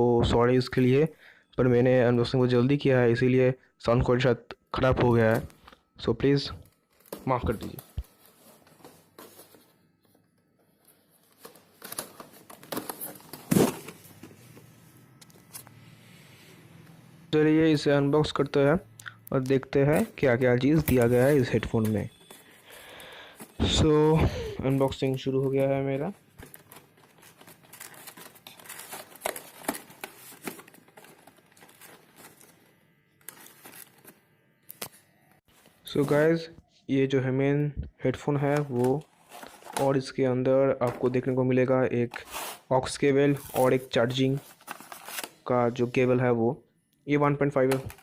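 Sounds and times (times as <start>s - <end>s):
packaging rustling: 6.5s - 15.7s, 19.3s - 36.3s, 38.6s - 40.0s, 43.3s - 45.5s.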